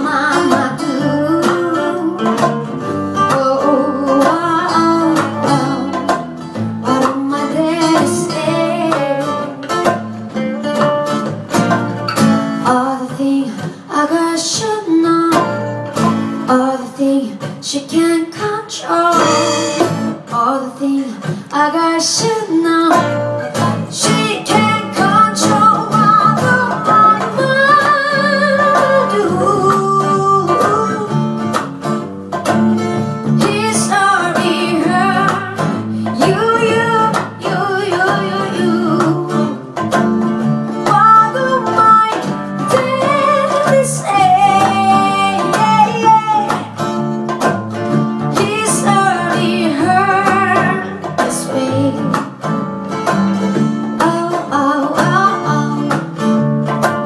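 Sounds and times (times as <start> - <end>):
person singing: 0.0 - 9.8, 16.4 - 31.4, 33.3 - 39.6, 40.8 - 46.9, 48.3 - 52.3, 54.0 - 56.2
strummed acoustic guitar: 0.0 - 57.0.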